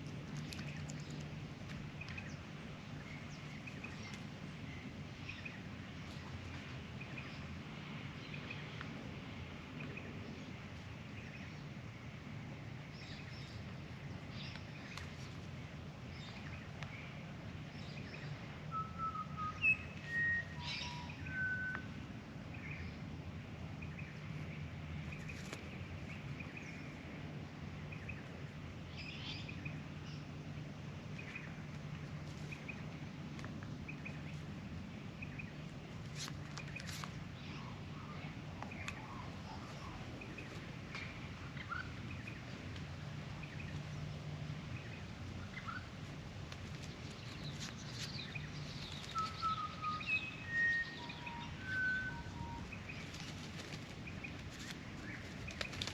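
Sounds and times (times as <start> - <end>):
low background hum: 0.0 - 55.9
whistled bird notes: 18.7 - 22.0, 48.0 - 53.0
bird chirps: 47.1 - 55.9.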